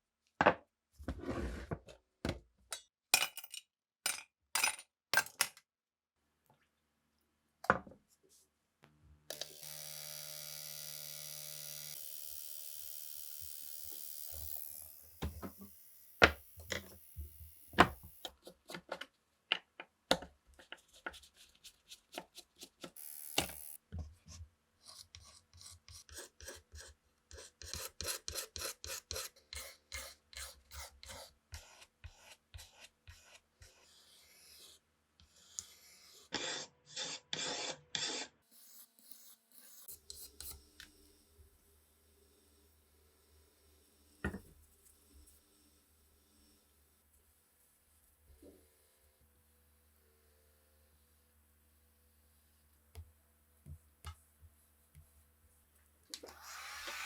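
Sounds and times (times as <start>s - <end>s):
filing strokes on metal: 20.7s - 41.0s, 56.2s - 57.0s.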